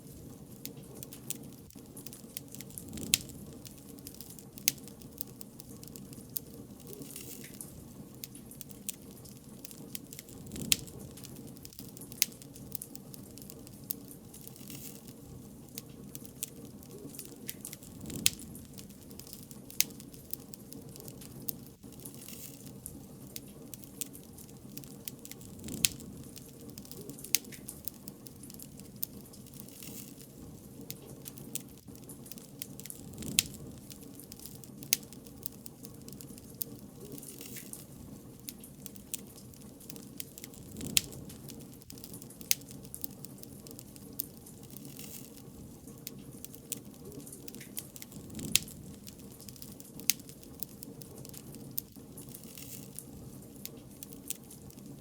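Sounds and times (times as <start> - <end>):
fire popping: 0.0 - 55.0
wood bonfire crackling: 0.0 - 55.0.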